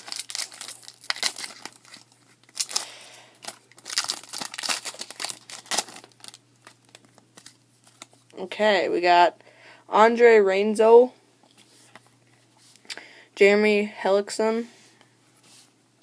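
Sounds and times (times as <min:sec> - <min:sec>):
wrapper tearing and crinkling: 0:00.0 - 0:08.2.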